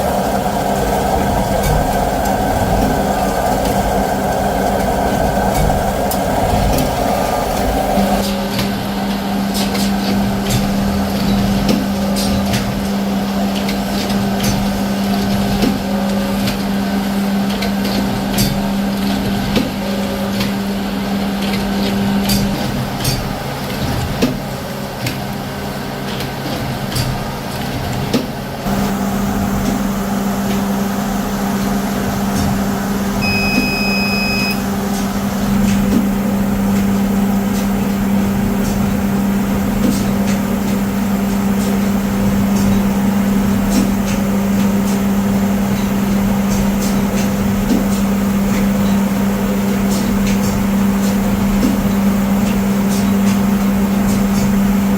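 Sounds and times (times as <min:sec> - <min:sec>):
machinery low hum: 0:00.0 - 0:23.0, 0:28.7 - 0:54.9
short high beep: 0:33.2 - 0:34.6.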